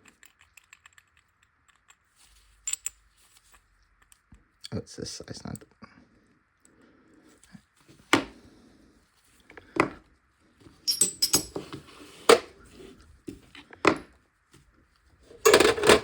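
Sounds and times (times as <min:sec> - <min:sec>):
metal tools clinking: 0:10.8 - 0:11.7, 0:15.4 - 0:16.0.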